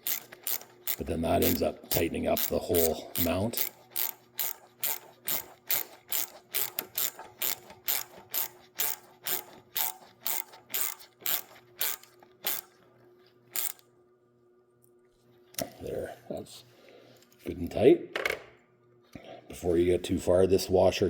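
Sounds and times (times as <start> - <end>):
socket ratchet clicking: 0.0 - 12.7, 13.6 - 13.8.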